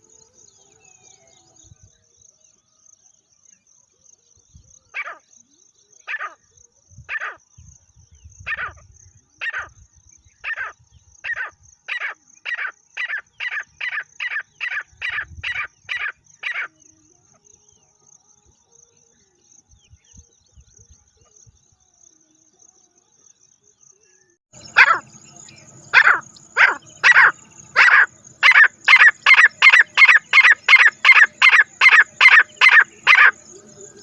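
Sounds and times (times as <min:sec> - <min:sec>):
bird calling harsh notes: 0:24.6 - 0:34.0
high-pitched insect trill: 0:24.6 - 0:34.0.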